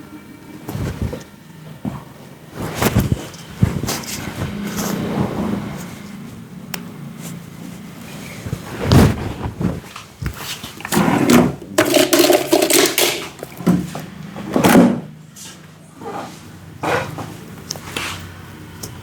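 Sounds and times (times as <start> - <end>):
hands rubbing and patting head: 2.6 - 5.2.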